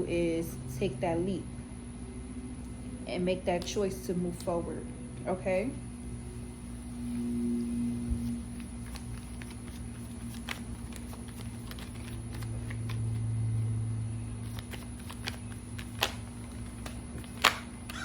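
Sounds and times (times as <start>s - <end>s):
low hum: 4.8s - 9.2s
cards snapping: 8.5s - 13.2s, 14.4s - 18.0s.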